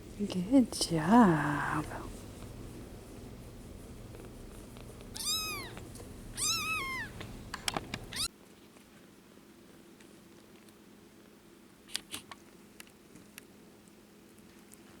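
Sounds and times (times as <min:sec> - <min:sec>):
low steady hum: 0:00.0 - 0:08.3
kitten squeaks: 0:05.1 - 0:05.8, 0:06.4 - 0:07.3, 0:07.9 - 0:08.3
kitten mewing: 0:05.1 - 0:08.3.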